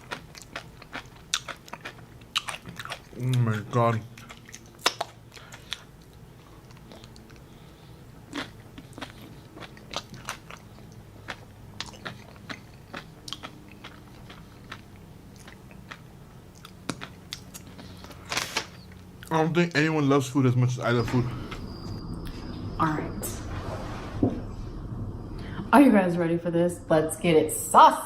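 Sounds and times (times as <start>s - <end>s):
chewing crunchy chips: 0.0s - 7.6s, 8.2s - 19.4s
faint low hum: 0.0s - 28.0s.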